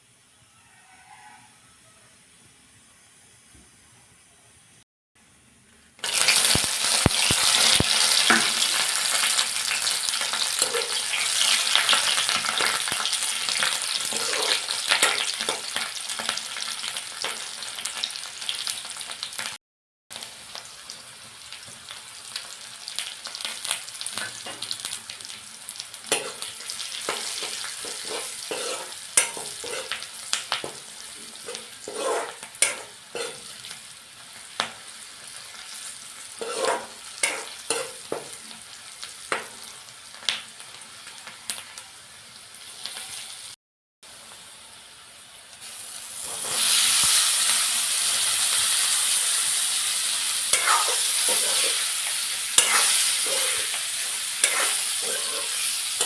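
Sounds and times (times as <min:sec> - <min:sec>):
food sizzling in a pan: 0:06.0 - 0:56.0
utensil scraping a pan: 0:10.6 - 0:12.8, 0:13.9 - 0:15.7, 0:26.1 - 0:33.8, 0:36.4 - 0:38.4, 0:50.5 - 0:56.0.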